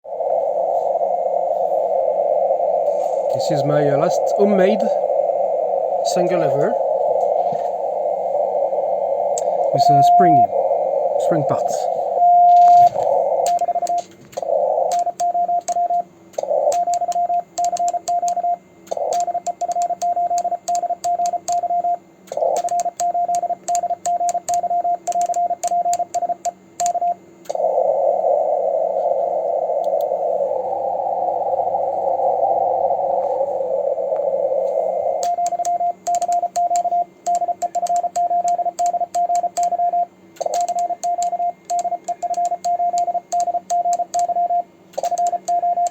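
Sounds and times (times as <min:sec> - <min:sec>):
radio receiver hiss: 0:00.0 - 0:45.9
morse code tone: 0:09.4 - 0:10.5, 0:11.2 - 0:27.2, 0:35.2 - 0:45.9
paddle contacts clicking: 0:12.5 - 0:27.6, 0:35.2 - 0:45.9.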